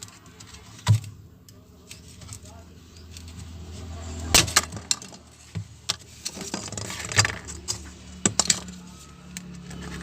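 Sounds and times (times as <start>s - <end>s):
plastic parts clicking: 4.4s - 10.0s.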